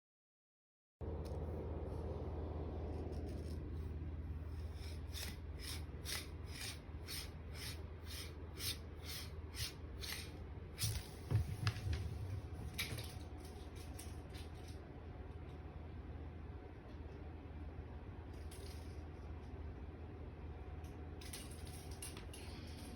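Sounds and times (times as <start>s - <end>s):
steady low hum: 1.0s - 22.9s
knocks and thumps: 11.2s - 13.0s.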